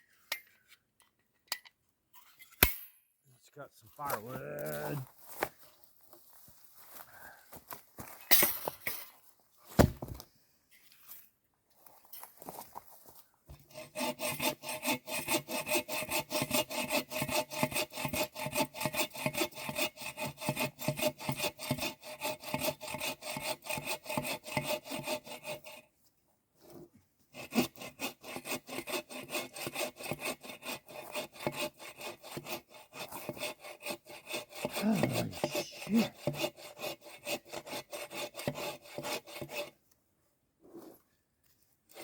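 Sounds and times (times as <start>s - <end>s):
bow saw cutting log: 13.7s - 25.8s, 27.4s - 39.8s.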